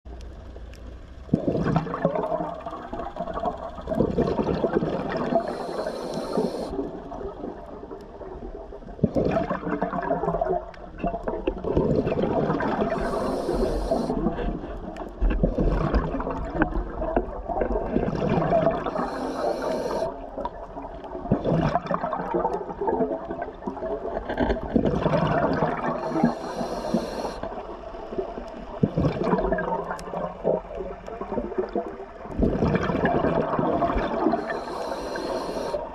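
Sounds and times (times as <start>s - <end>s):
bubbling exhalations underwater: 1.3s - 7.9s, 8.9s - 14.4s, 15.4s - 27.6s, 28.8s - 35.9s
regulator inhalation hiss: 5.3s - 6.8s, 12.9s - 14.2s, 18.9s - 20.2s, 26.0s - 27.6s, 34.3s - 35.9s.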